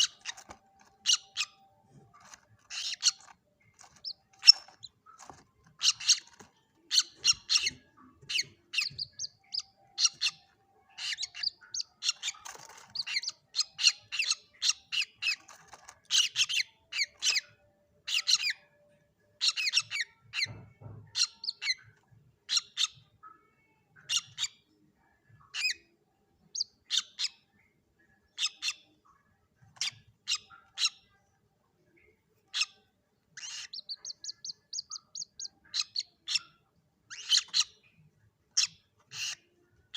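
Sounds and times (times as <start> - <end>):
bird chicks peeping: 0.0 - 31.2, 31.9 - 39.9.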